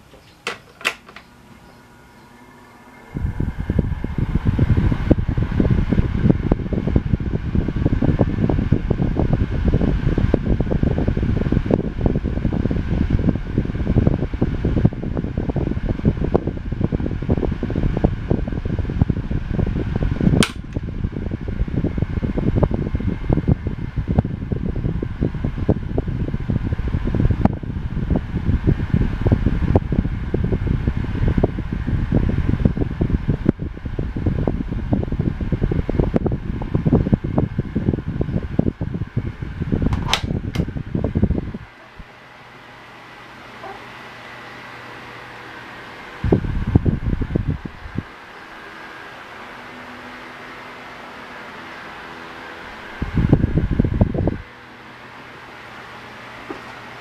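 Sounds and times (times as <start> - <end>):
electric fan running: 0.0 - 57.0
fan switch click: 0.1 - 1.7, 20.4 - 20.9, 39.9 - 40.8.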